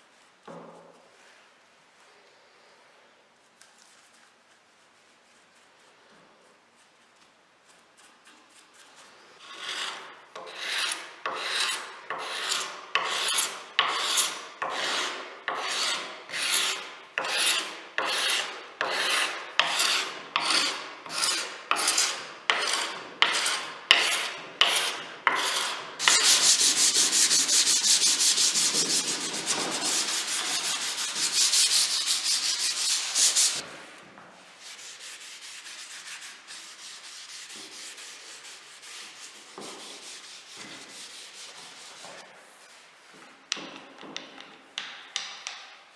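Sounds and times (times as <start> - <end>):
hand sanding strokes: 8.0 - 33.6, 34.6 - 42.8.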